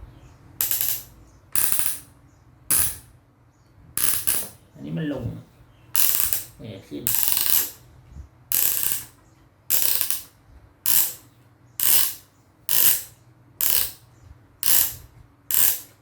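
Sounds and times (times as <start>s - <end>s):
winch crank ratcheting: 6.0s - 6.5s, 7.1s - 7.8s, 8.5s - 9.1s, 9.7s - 10.2s, 11.8s - 14.0s, 14.6s - 15.9s.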